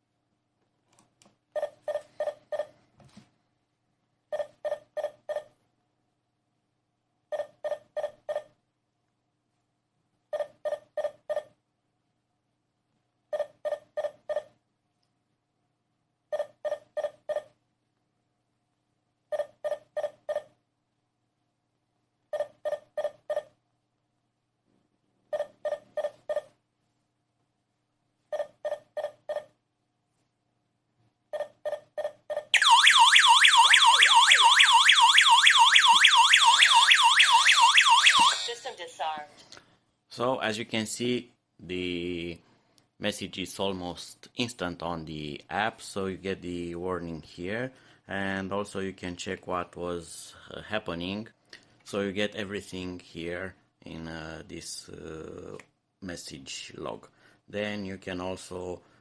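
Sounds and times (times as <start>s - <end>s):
alarm panel high-pitched beeps: 31.4s - 38.7s.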